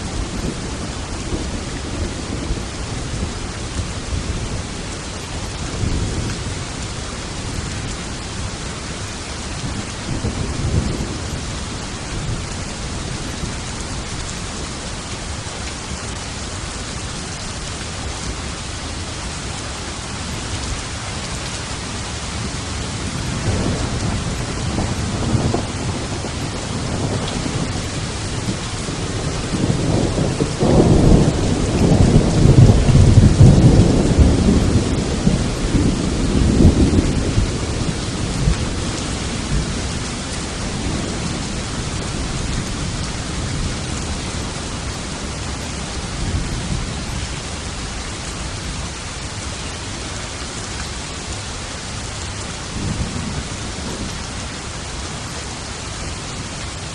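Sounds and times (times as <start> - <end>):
heavy rain: 0.0 - 56.9
rolling thunder: 9.6 - 14.3, 22.4 - 47.4.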